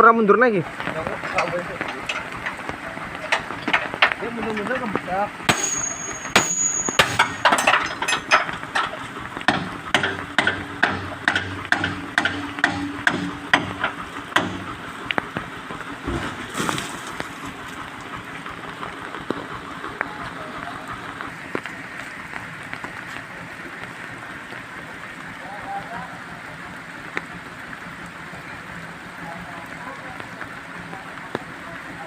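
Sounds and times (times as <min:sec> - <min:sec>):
rain hiss: 0:00.0 - 0:32.0
sharp knocks: 0:05.5 - 0:14.7.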